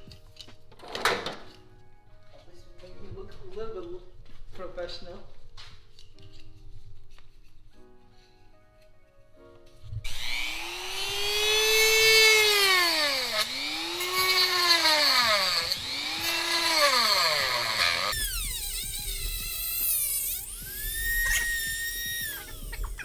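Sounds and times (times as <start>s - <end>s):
cordless drill motor whining: 10.1s - 23.0s.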